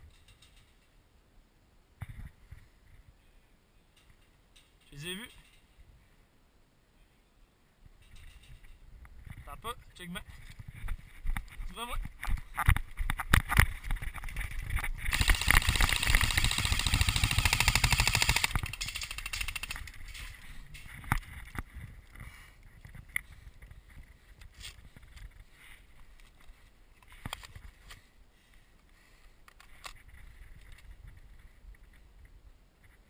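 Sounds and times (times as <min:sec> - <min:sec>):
airsoft gun firing: 0:15.1 - 0:19.9.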